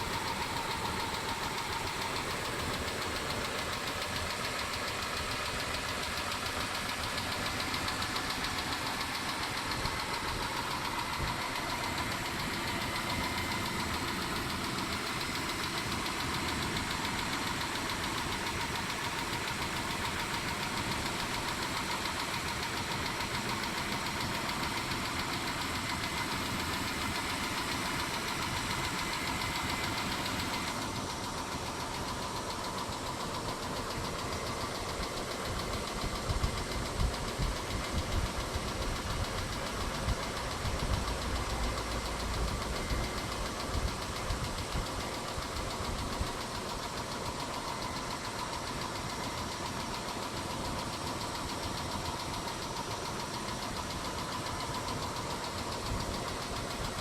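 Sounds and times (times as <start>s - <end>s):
car engine idling with ticking: 0.0s - 57.0s.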